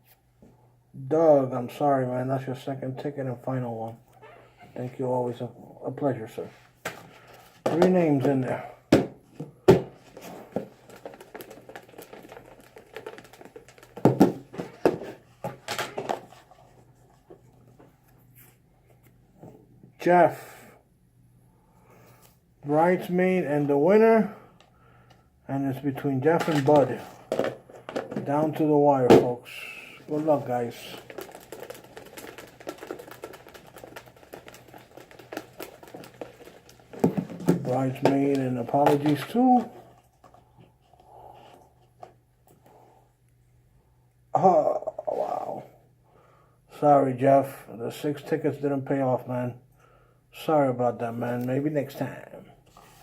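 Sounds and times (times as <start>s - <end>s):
paper slips rustling: 26.3s - 40.0s.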